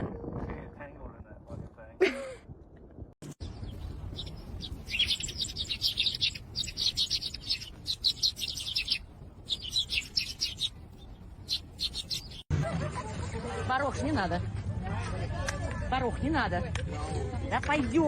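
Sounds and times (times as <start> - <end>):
small bird chirping: 3.4 - 12.5.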